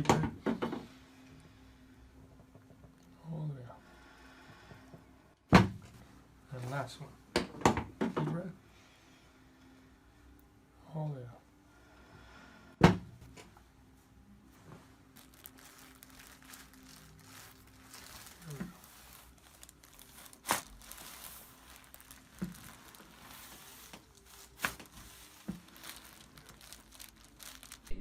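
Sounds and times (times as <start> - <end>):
rustling and crinkling: 14.4 - 28.0.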